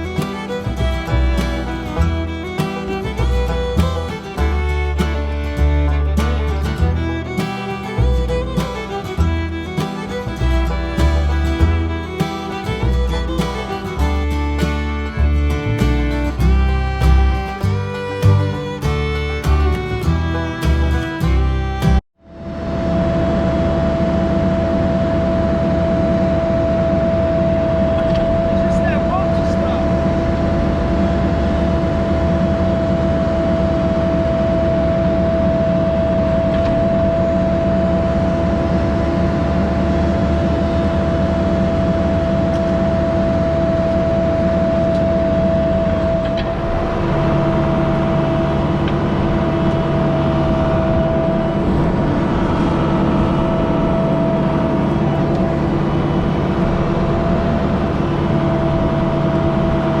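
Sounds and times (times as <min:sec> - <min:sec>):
diesel engine running: 0:00.0 - 1:00.0
high whine: 0:14.9 - 1:00.0.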